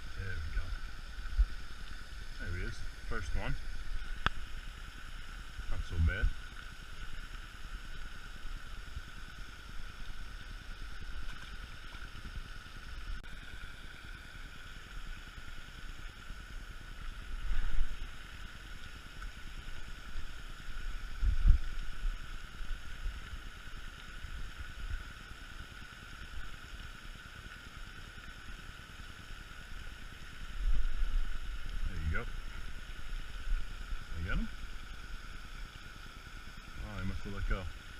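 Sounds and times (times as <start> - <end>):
wind rumbling on microphone: 17.3 - 18.2, 20.1 - 23.4, 30.6 - 35.0.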